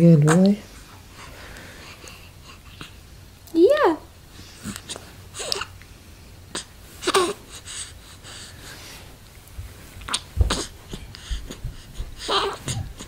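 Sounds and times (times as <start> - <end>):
baby squeaking and grunting: 5.4 - 5.8, 6.6 - 7.4, 12.2 - 13.0.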